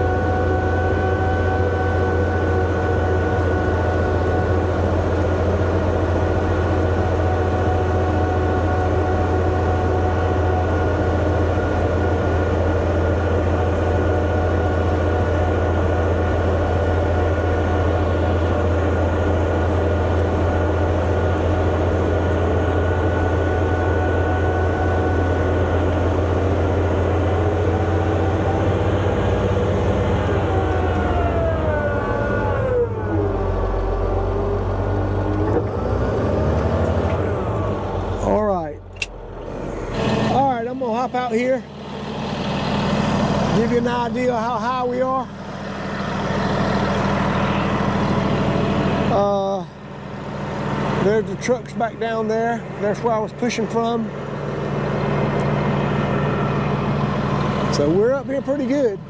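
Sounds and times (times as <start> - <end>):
bulldozer diesel engine under load: 0.0 - 59.0.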